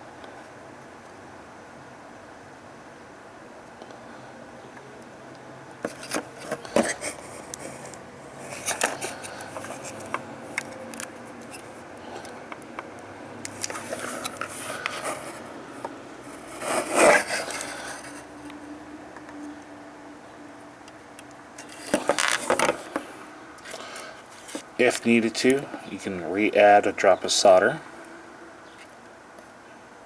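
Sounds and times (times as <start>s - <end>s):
loud scraping rub: 16.3s - 18.3s.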